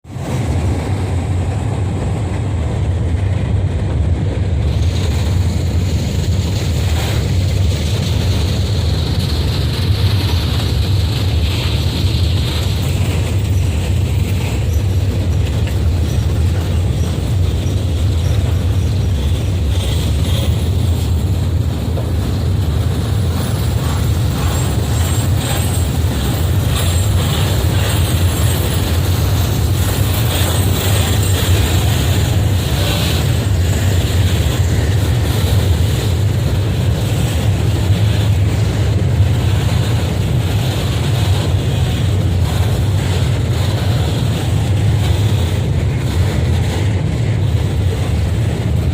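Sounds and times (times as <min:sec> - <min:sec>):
train rumble: 0:00.0 - 0:48.9
train wheels clacking: 0:00.0 - 0:48.9.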